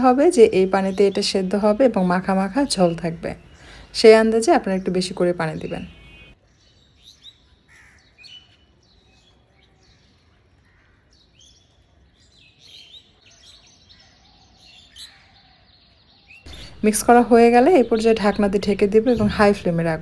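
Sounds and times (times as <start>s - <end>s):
faint bird chirps: 0.0s - 20.0s.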